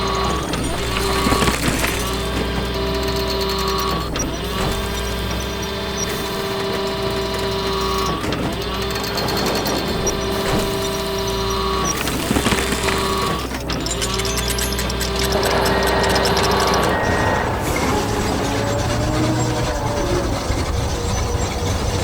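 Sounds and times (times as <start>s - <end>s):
machine whining tone: 0.0s - 22.0s
motorized machine humming: 0.0s - 22.0s.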